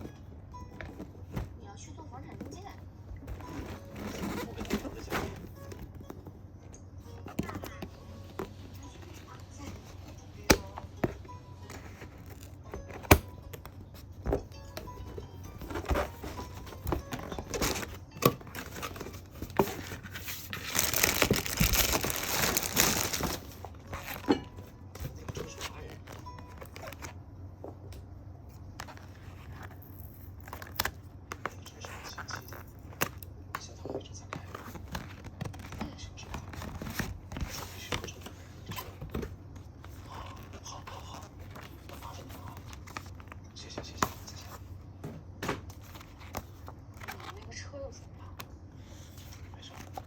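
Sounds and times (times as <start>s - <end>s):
rustling clatter: 2.3s - 6.4s, 13.9s - 27.0s
plastic parts knocking: 7.2s - 24.6s.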